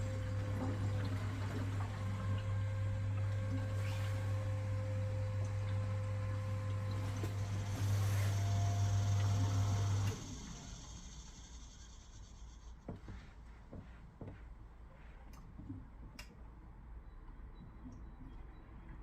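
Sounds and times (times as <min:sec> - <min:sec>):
small electric pump humming: 0:00.0 - 0:12.8.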